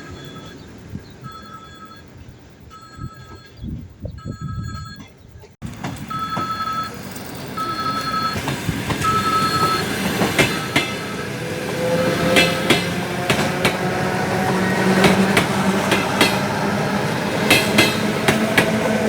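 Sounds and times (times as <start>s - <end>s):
high electronic beep: 0.0s - 2.1s, 2.7s - 5.2s, 7.6s - 8.4s
train rolling: 5.6s - 19.0s
wheels squealing on rails: 5.6s - 19.0s.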